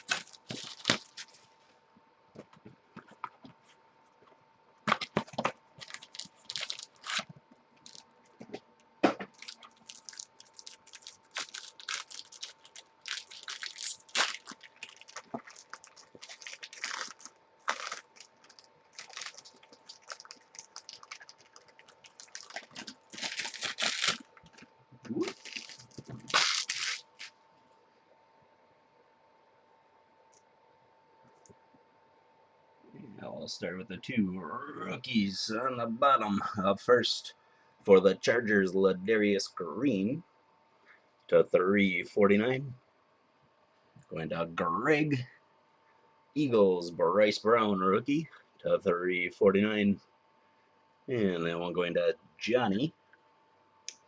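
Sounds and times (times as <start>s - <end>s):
packaging tearing and rustling: 0.0s - 1.4s, 4.9s - 8.0s, 9.3s - 27.4s.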